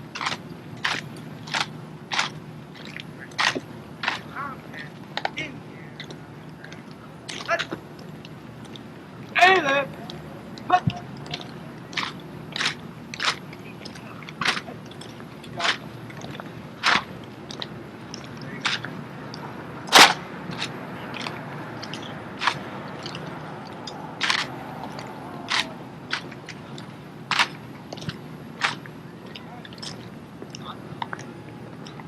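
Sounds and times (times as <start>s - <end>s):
hands slapping rifles: 16.8s - 17.1s, 19.9s - 22.6s, 24.2s - 24.5s, 25.5s - 26.3s, 27.3s - 28.8s.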